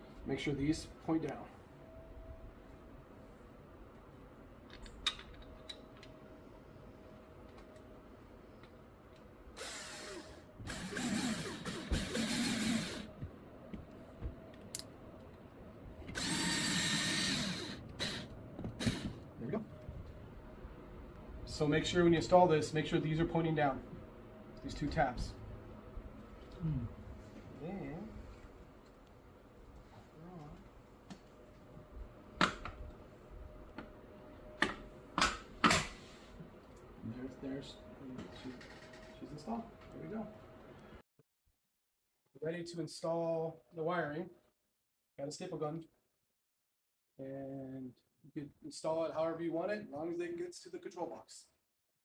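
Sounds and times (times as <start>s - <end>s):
power screw gun driving screws: 9.6s - 13.1s, 16.1s - 19.1s.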